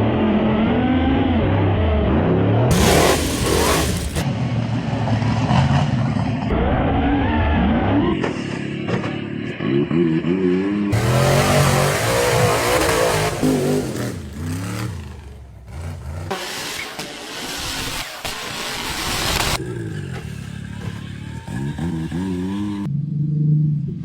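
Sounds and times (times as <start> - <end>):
truck engine revving hard: 0.0 - 23.7
loud rushing noise: 2.7 - 4.4.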